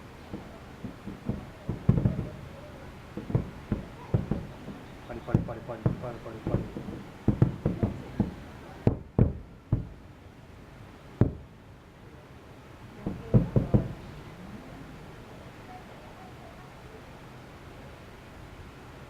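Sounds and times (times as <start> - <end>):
distant fireworks bangs: 0.0 - 10.1, 11.1 - 11.5, 13.0 - 14.2.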